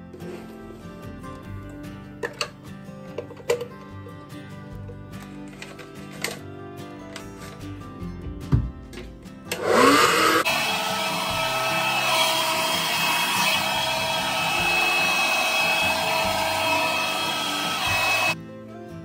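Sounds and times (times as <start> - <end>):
appliance motor whining: 9.5 - 18.4.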